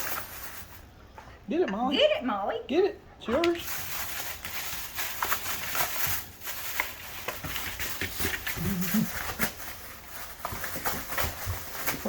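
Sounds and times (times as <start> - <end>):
dog ripping gift packaging: 3.4 - 12.0.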